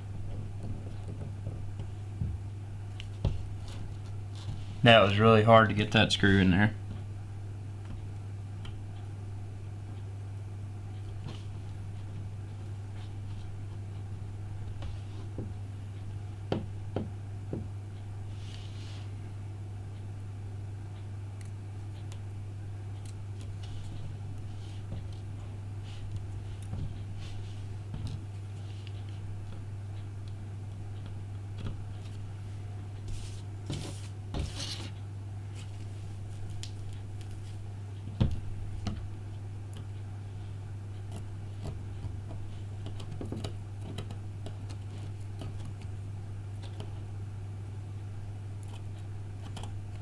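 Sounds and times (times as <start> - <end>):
steady low hum: 0.0 - 50.0.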